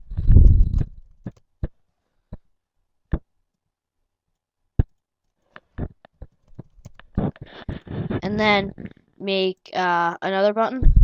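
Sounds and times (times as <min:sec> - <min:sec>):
computer mouse clicking: 0:00.6 - 0:01.7, 0:04.3 - 0:07.9.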